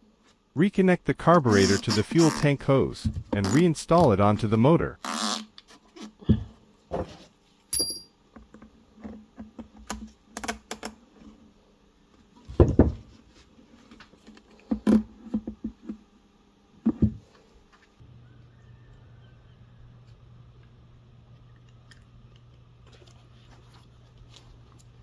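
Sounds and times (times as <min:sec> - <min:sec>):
metal parts and tools clicking: 0:07.7 - 0:08.1
metallic ring: 0:07.7 - 0:08.2.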